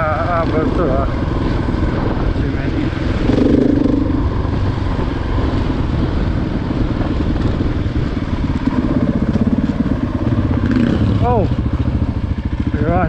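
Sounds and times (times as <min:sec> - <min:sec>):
dirt bike engine running: 0:00.0 - 0:13.0.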